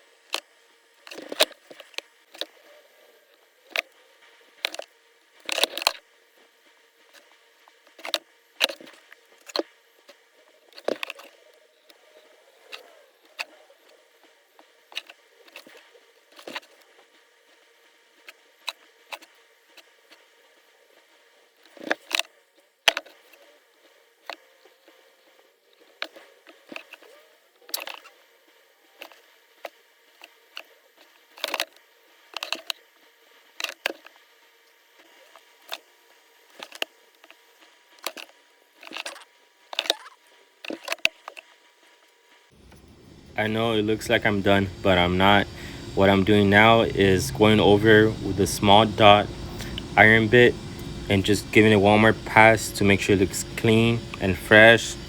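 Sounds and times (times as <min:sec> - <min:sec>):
faint steady hum: 0:27.8 - 0:55.0.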